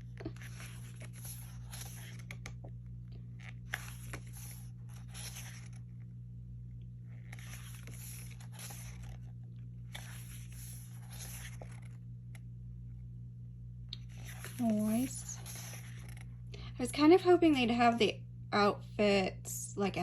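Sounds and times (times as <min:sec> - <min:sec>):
paper pages rustling: 0:00.0 - 0:06.1, 0:07.1 - 0:12.5, 0:14.0 - 0:16.3
steady low hum: 0:00.0 - 0:20.0.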